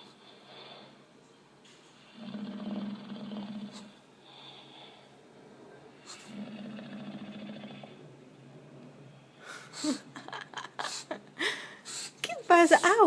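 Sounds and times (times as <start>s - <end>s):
dog snoring through speaker: 2.0s - 5.1s, 5.9s - 8.9s.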